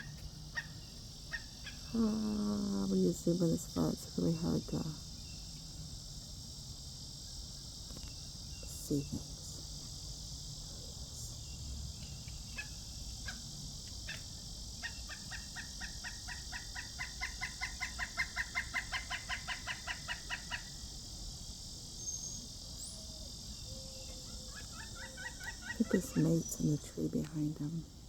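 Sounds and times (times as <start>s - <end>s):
woodpecker calling: 0.0s - 2.0s, 11.9s - 20.9s, 22.0s - 27.3s
high insect drone: 0.0s - 28.0s.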